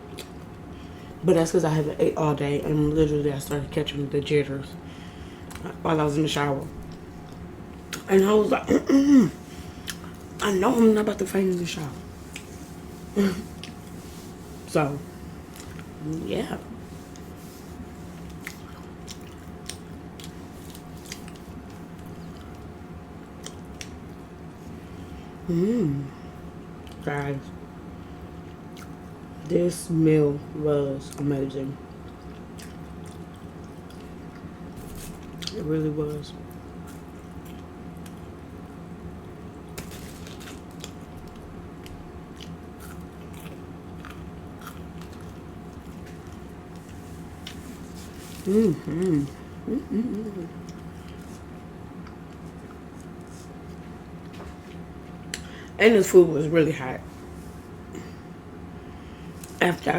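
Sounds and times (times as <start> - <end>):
steady low hum: 0.0 - 59.9
crisp chewing crunches: 31.9 - 38.4, 39.7 - 49.4.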